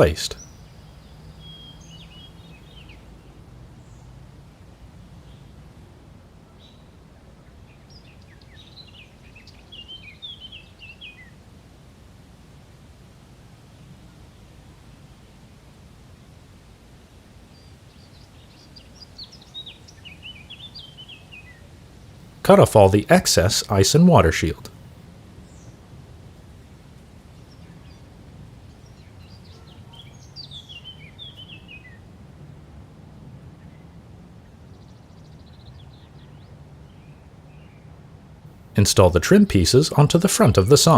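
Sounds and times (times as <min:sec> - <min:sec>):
songbird chirping: 0:00.0 - 0:04.2, 0:05.1 - 0:11.7, 0:17.4 - 0:25.9, 0:26.9 - 0:32.1, 0:33.4 - 0:38.0, 0:38.6 - 0:40.9.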